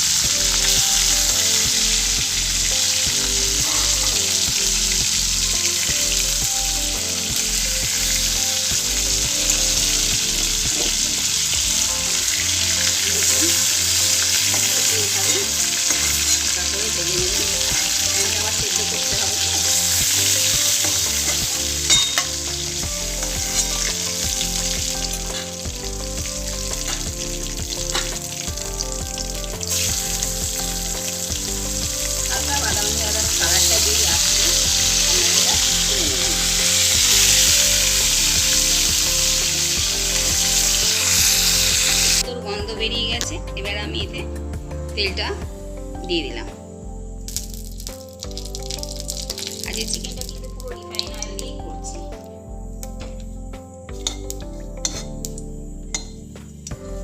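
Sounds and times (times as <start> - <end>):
food sizzling in pan: 0.0 - 42.2, 46.6 - 57.0.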